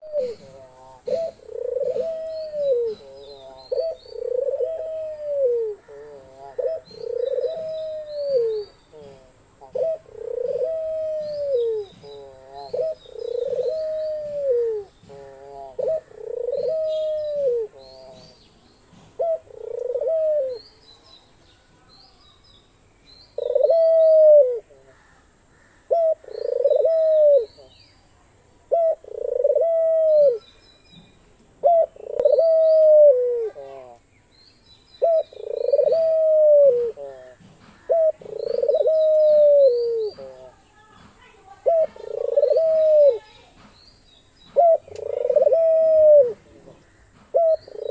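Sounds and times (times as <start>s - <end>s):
dove cooing: 0.0s - 18.4s, 19.0s - 20.7s, 23.3s - 27.8s, 28.7s - 30.5s, 31.6s - 34.1s, 35.0s - 40.6s, 41.2s - 43.6s, 44.5s - 47.9s
small birds chirping: 0.0s - 47.9s.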